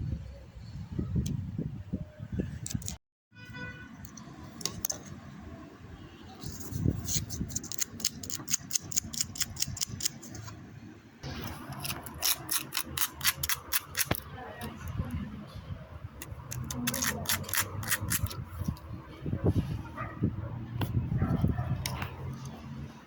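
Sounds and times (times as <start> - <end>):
sharp mechanical clicks: 7.5 - 10.5, 11.8 - 14.2.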